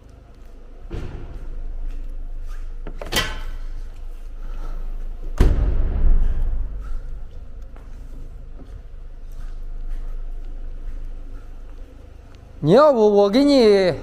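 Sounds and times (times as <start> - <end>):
low steady rumble: 3.5 - 12.7.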